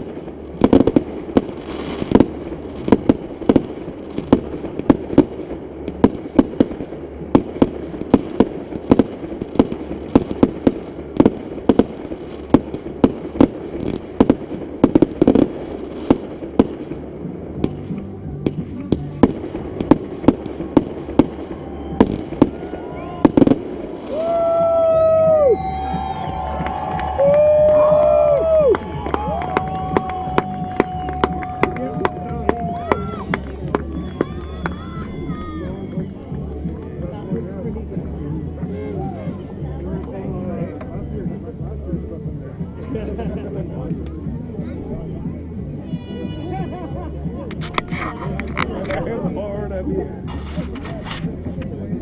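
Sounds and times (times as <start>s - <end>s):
fireworks bangs and booms: 0.0s - 42.0s
people cheering and whooping: 21.3s - 37.4s, 45.8s - 49.1s.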